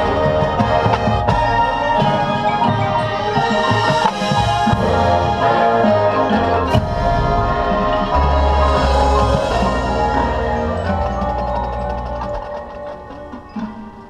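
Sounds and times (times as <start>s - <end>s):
brass chords: 0.0s - 13.7s
marimbas and mallet percussion: 0.0s - 14.0s
drum strikes: 6.5s - 14.0s.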